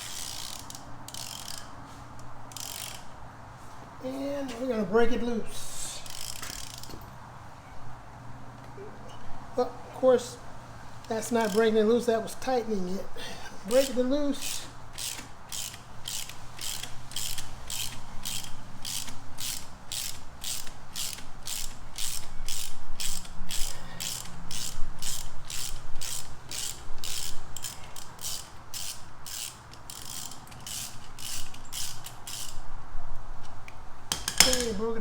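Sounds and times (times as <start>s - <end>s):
hand ratchet clicking: 0.0s - 3.2s, 6.0s - 7.1s, 11.0s - 12.1s, 13.7s - 32.7s, 33.4s - 34.8s.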